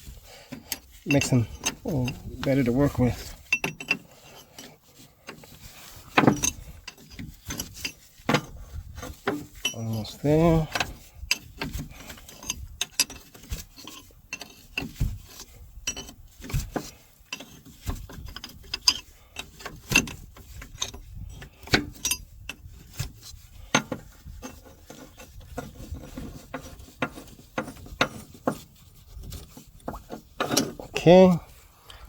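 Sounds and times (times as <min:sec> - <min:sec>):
wrench clinking on metal fittings: 0:00.7 - 0:04.7, 0:15.8 - 0:16.1.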